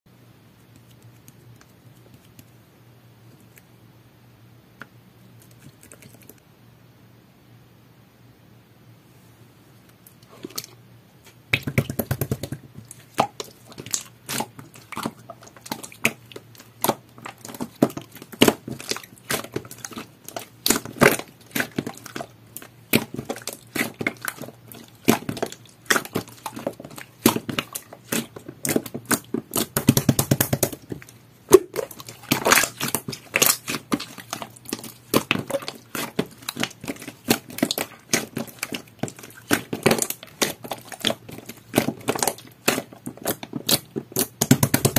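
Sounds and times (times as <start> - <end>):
slime clicking and crackling: 11.5 - 44.9.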